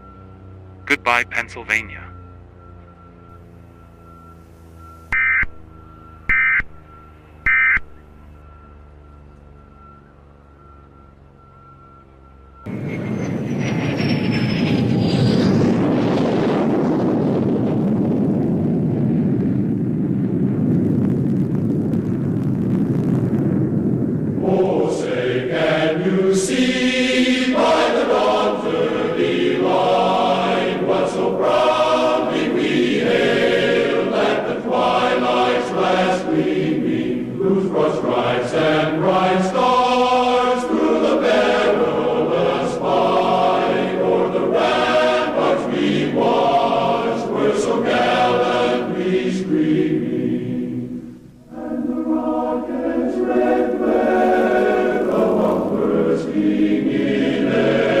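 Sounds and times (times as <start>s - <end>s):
choir singing held chords: 0.0s - 2.0s, 24.2s - 58.0s.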